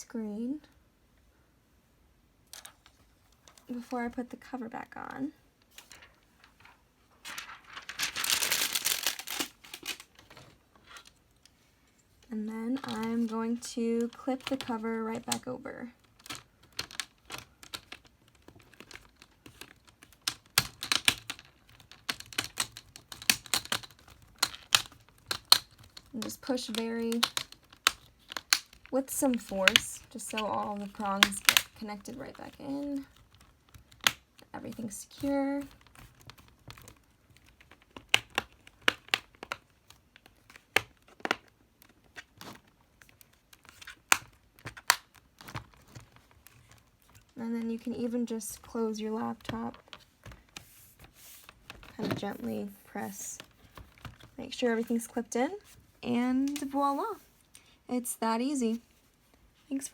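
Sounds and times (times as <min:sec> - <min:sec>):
plastic clips clicking and snapping: 0:16.1 - 0:31.8.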